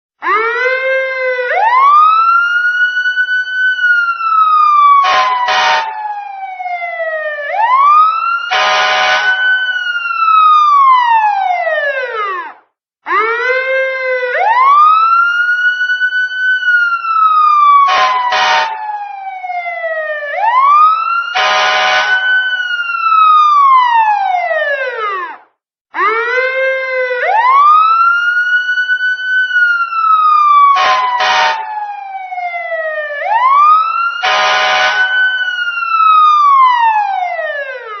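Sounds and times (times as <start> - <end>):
police siren wailing: 0.2 - 38.0
horn blasts: 5.0 - 5.9, 8.5 - 9.4, 17.9 - 18.7, 21.4 - 22.3, 30.8 - 31.6, 34.2 - 35.2.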